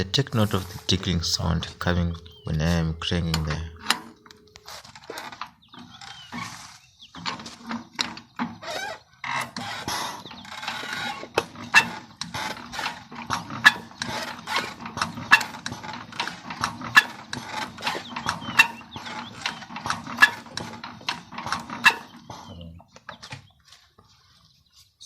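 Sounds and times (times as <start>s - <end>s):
diesel engine hum: 0.0s - 4.5s
rapid metallic ticking: 0.0s - 6.4s.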